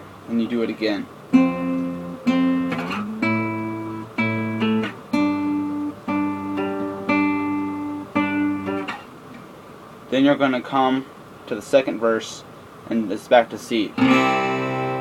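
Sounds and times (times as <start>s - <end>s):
guitar strings plucked: 1.3s - 9.1s, 14.0s - 15.0s
guitar slide: 1.4s - 9.1s, 14.0s - 15.0s.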